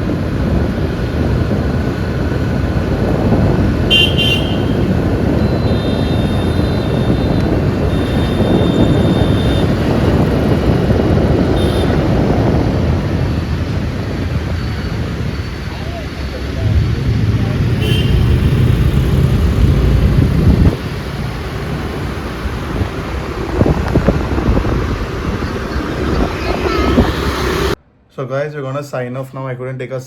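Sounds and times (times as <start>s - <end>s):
wind rush: 0.0s - 27.8s
road traffic noise: 0.0s - 28.1s
vehicle horn tooting: 3.8s - 10.3s, 11.4s - 12.3s, 17.7s - 18.8s.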